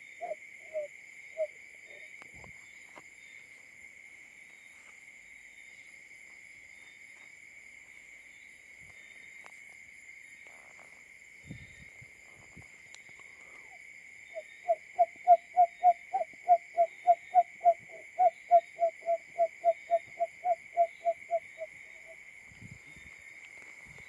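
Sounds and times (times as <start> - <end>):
bird hooting notes: 0.0 - 1.5.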